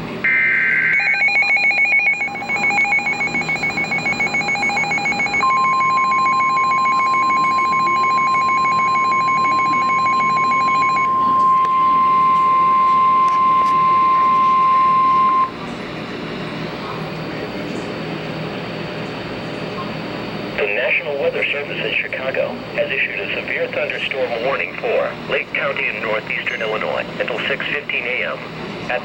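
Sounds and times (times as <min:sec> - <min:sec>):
steady warning alarm tone: 0:00.0 - 0:16.8
rapidly pulsing electronic alarm beep: 0:00.2 - 0:15.6.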